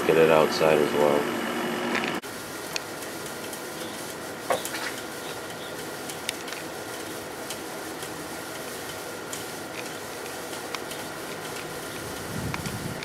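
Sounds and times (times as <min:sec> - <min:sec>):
window air conditioner running: 0:00.0 - 0:13.0
water sloshing: 0:11.3 - 0:13.0.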